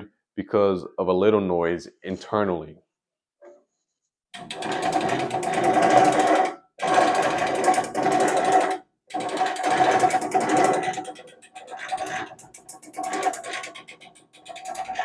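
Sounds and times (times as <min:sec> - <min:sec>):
gears grinding: 0:04.4 - 0:15.0.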